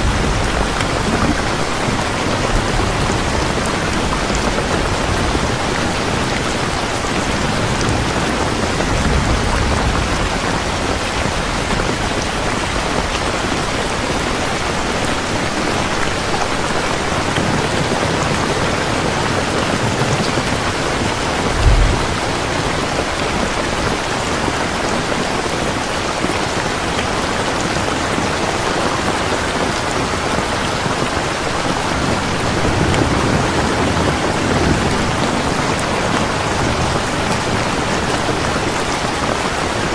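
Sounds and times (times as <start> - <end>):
low rumbles of thunder: 0.0 - 13.1, 21.2 - 24.2
heavy rain falling: 0.0 - 39.9
low thump: 21.5 - 22.7.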